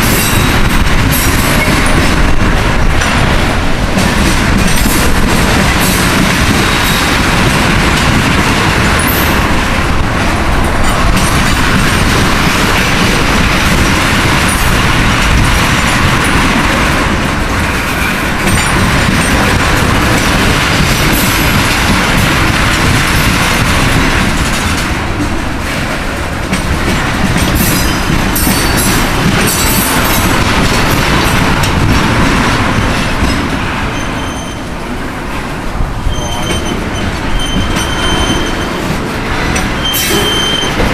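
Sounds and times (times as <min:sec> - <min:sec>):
freight train rolling past: 0:00.0 - 0:40.9
wheels clacking over rail joints: 0:00.0 - 0:40.9
high-pitched wheel squeal: 0:33.9 - 0:34.7, 0:36.1 - 0:38.8, 0:39.7 - 0:40.8.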